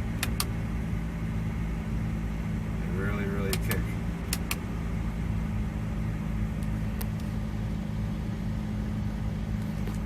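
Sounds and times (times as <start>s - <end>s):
pickup engine idling: 0.0s - 10.0s.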